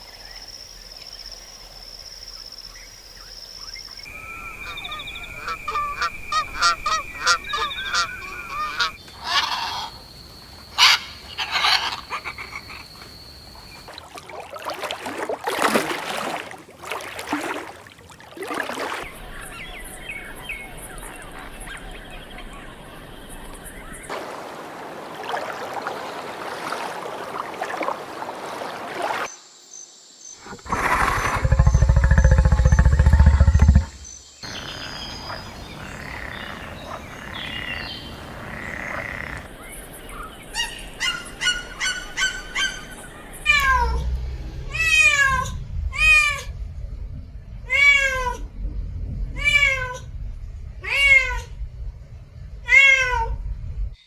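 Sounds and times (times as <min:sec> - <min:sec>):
animal calls: 0:04.1 - 0:10.1, 0:10.7 - 0:13.9, 0:30.4 - 0:39.5, 0:40.5 - 0:46.6
cat meowing: 0:43.5 - 0:44.1, 0:44.7 - 0:46.5, 0:47.7 - 0:48.5, 0:49.3 - 0:50.1, 0:50.8 - 0:51.6, 0:52.6 - 0:53.4.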